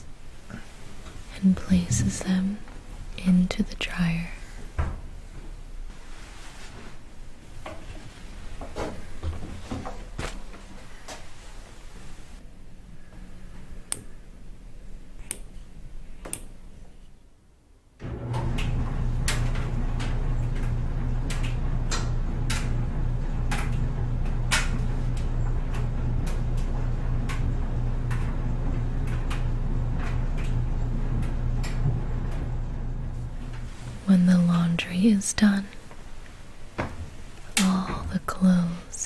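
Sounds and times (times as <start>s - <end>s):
clothes dryer motor hum: 0.0s - 17.0s, 17.9s - 39.0s
load tumbling in dryer drum: 18.0s - 32.6s.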